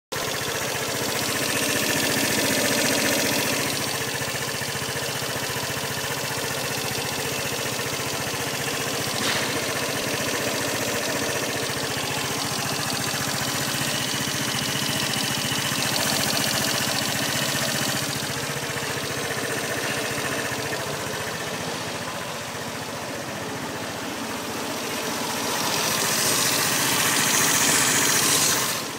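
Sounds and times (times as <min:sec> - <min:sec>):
mechanical engine drone: 0:00.2 - 0:28.9.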